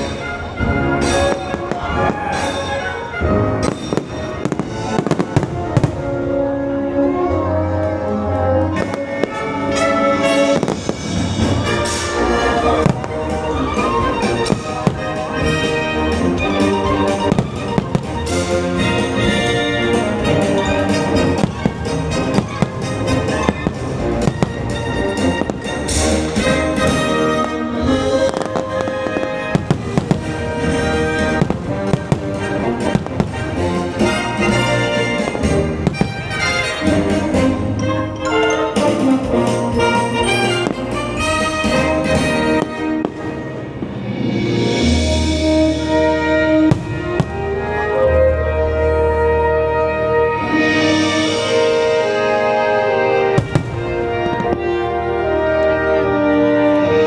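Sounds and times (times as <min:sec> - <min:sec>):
fireworks bangs: 0:00.0 - 0:06.4, 0:08.8 - 0:37.6, 0:45.0 - 0:48.0, 0:53.0 - 0:57.0
orchestral music: 0:00.0 - 0:57.0.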